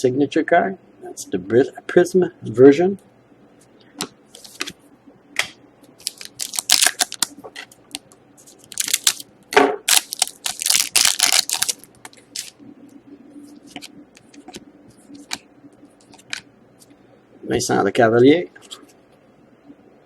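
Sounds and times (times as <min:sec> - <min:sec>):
trading cards clicking and rustling: 0:04.0 - 0:04.8, 0:06.0 - 0:09.2, 0:09.9 - 0:12.6, 0:13.6 - 0:15.4, 0:16.0 - 0:16.5.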